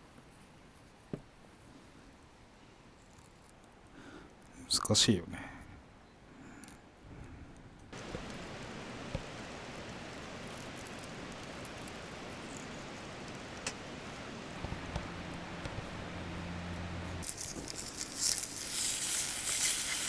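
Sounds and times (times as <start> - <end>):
fat popping: 17.2 - 20.0
pork sizzling in a pan: 17.2 - 20.0.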